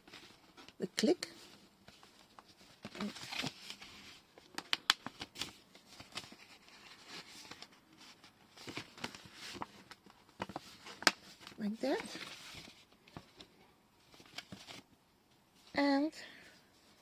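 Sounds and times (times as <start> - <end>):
paper envelope rustling: 1.4 - 14.8.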